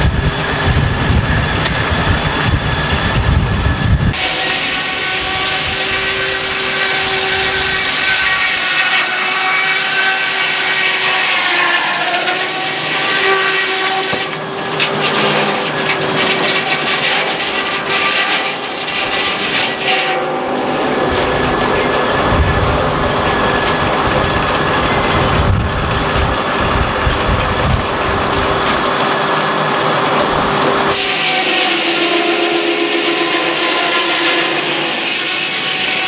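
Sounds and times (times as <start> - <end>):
saw blade whine cutting log: 0.0 - 36.0
gritty crackling: 10.4 - 31.6.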